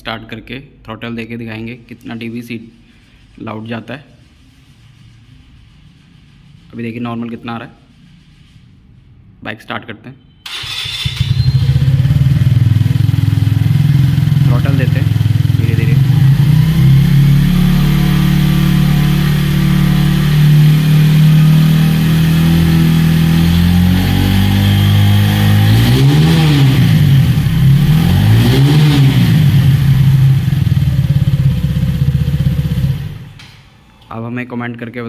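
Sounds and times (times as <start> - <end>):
motorcycle engine revving: 10.5 - 33.4.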